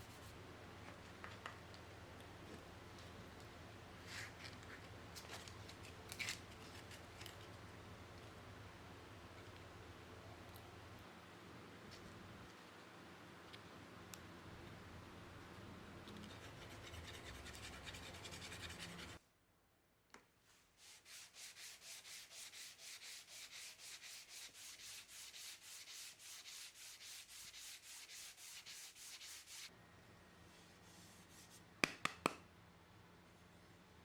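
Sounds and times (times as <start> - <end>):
hand sanding wood: 16.3 - 19.2, 20.8 - 29.7.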